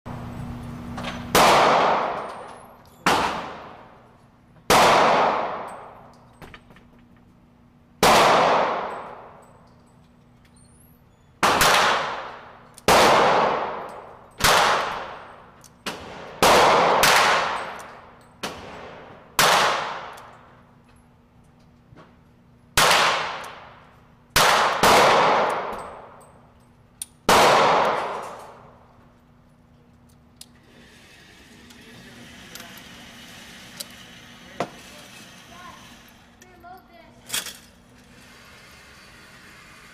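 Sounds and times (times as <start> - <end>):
gunshots with ringing echo: 1.3 - 2.3, 3.0 - 3.9, 4.7 - 5.9, 8.0 - 9.4, 11.4 - 15.3, 15.9 - 17.8, 18.4 - 20.2, 22.8 - 23.7, 24.4 - 26.2, 27.3 - 28.6.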